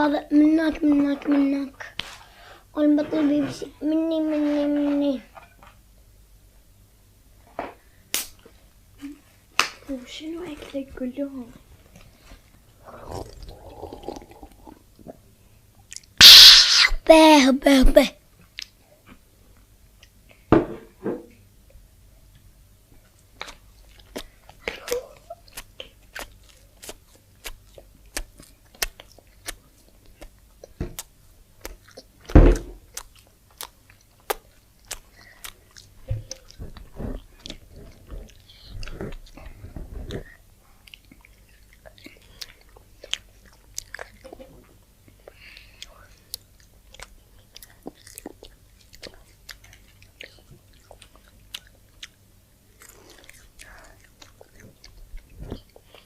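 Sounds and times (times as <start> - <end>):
crunchy chewing of fried food: 12.0 - 14.8, 23.3 - 56.0
mouth clicks: 15.9 - 17.0.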